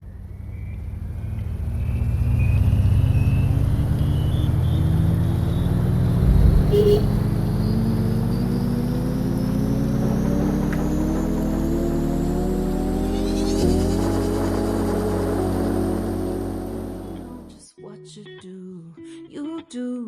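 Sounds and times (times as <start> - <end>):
vehicle engine accelerating: 0.0 - 17.6
short beep: 5.6 - 7.3.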